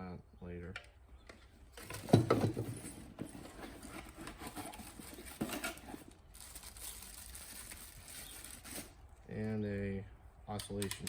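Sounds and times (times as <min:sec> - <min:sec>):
packaging rustling: 0:01.8 - 0:09.1.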